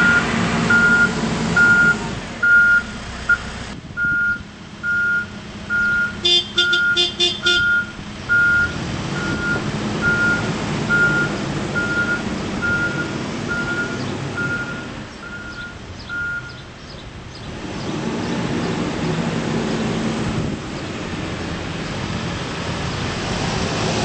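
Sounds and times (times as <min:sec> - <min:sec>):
backup alarm beeping: 0:00.0 - 0:03.4, 0:04.0 - 0:16.6
diesel engine running: 0:00.0 - 0:24.0.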